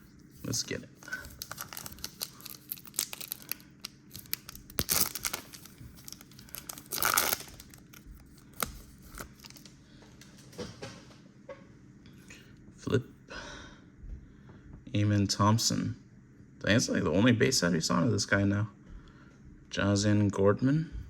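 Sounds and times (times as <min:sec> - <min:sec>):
wrapper tearing and crinkling: 0:01.0 - 0:09.7.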